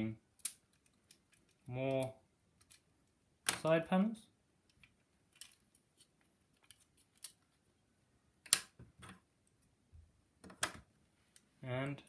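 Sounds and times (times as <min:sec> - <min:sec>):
plastic pieces clicking: 0:00.4 - 0:03.7, 0:04.6 - 0:05.9, 0:08.4 - 0:09.2.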